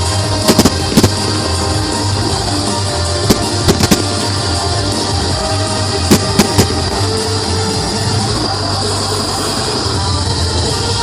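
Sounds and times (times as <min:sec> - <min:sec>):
music playing: 0:00.0 - 0:11.0
fireworks bangs: 0:00.3 - 0:01.6, 0:03.1 - 0:04.6, 0:05.9 - 0:07.3.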